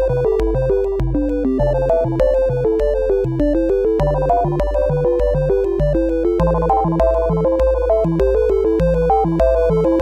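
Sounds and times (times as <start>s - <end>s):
electronic synthesizer music: 6.4s - 9.2s.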